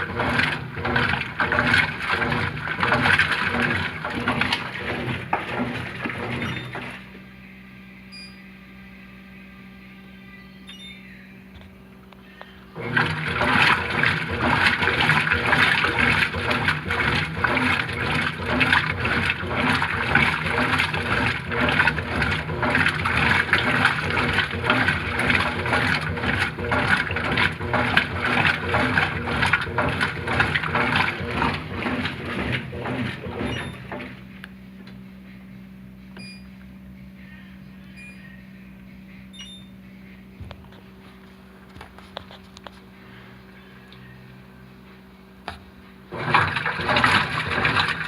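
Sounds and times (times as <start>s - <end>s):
washing machine sloshing water: 0.0s - 7.1s, 12.8s - 34.4s, 46.1s - 48.0s.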